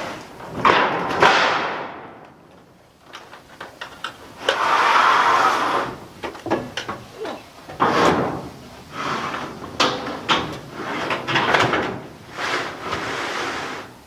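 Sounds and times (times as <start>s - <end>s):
metal sheet scraping over roof: 0.0s - 14.0s
metal clicks and knocks: 6.2s - 8.2s.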